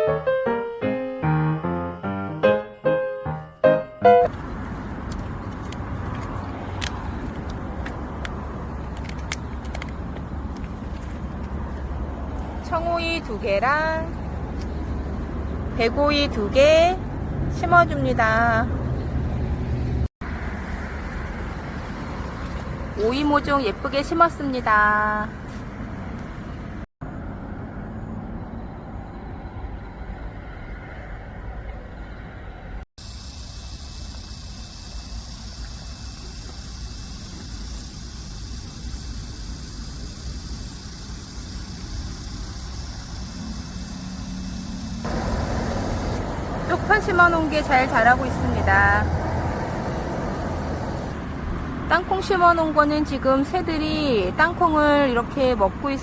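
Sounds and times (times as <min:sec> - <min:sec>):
piano notes: 0:00.0 - 0:04.3
low outdoor background rumble: 0:24.6 - 0:56.0.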